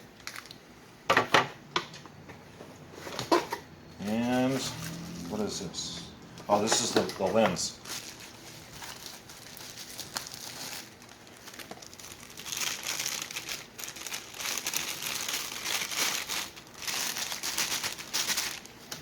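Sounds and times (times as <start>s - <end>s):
packaging crinkling: 0.0s - 0.6s, 6.5s - 19.0s.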